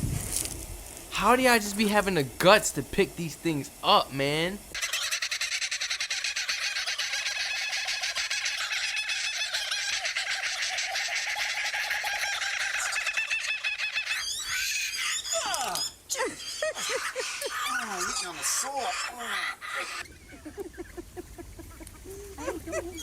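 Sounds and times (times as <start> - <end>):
flock of birds calling: 3.7 - 20.6.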